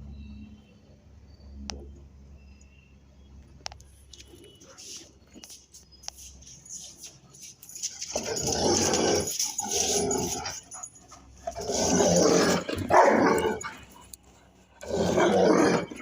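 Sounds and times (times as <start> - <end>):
dog growling: 11.4 - 13.8, 14.7 - 16.0.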